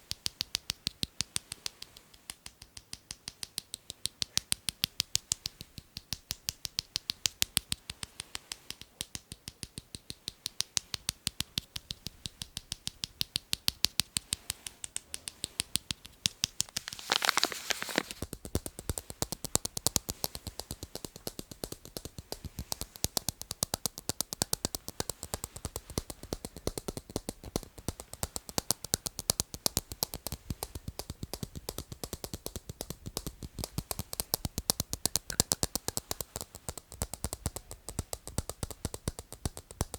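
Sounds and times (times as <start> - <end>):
tapping on hard objects: 13.6 - 39.9
scratchy rustle: 16.7 - 18.2.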